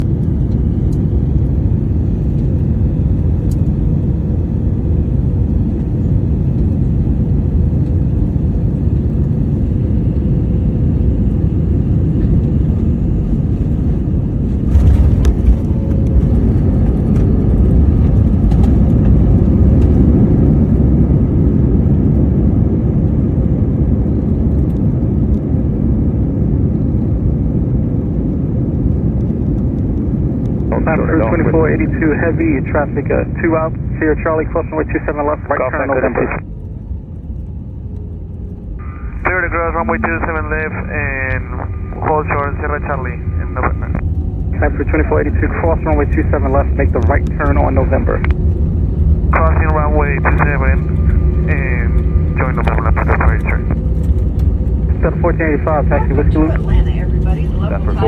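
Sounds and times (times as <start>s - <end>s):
aircraft cabin rumble: 0.0s - 58.0s
touchdown jolt: 14.4s - 19.2s.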